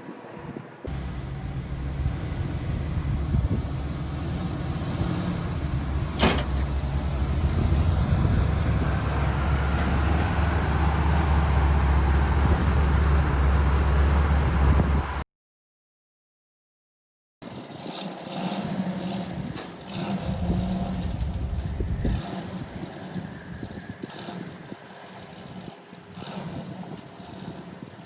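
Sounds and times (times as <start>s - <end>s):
vehicle engine rumbling: 0.9s - 15.2s, 19.3s - 26.6s.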